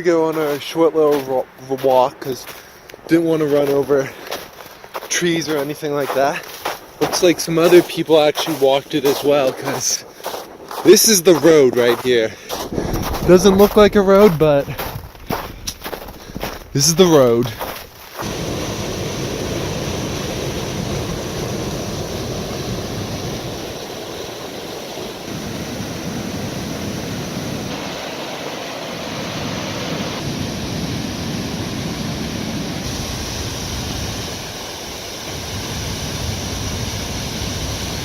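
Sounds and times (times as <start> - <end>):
creek water rushing: 0.0 - 14.2, 16.8 - 38.0.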